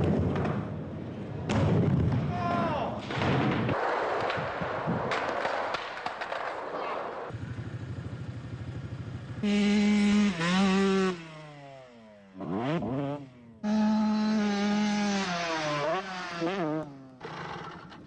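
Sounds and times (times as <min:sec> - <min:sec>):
motorcycle engine idling and revving: 0:07.3 - 0:18.0.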